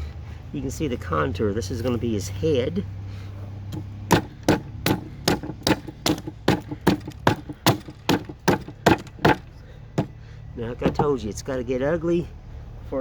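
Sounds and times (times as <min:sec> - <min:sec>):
hatchet chopping wood: 0:03.7 - 0:10.2, 0:10.8 - 0:11.2.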